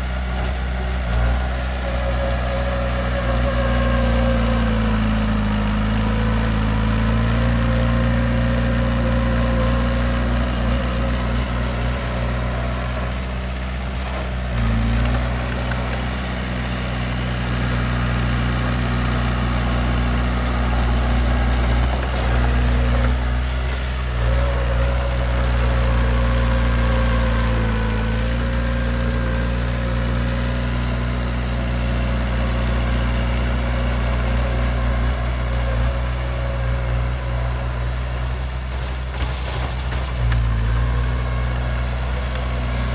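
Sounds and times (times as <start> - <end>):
heavy diesel engine running: 0.0 - 42.9.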